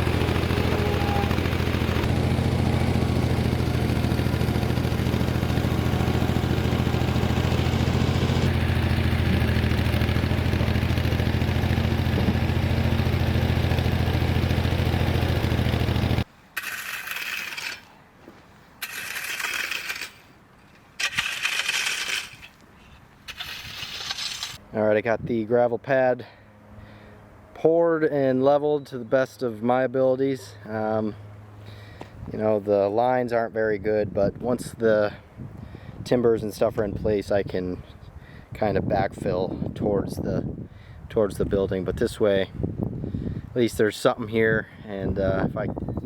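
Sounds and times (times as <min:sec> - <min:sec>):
tractor engine running: 0:00.0 - 0:16.3
gravel scraping and rattling: 0:00.0 - 0:24.6.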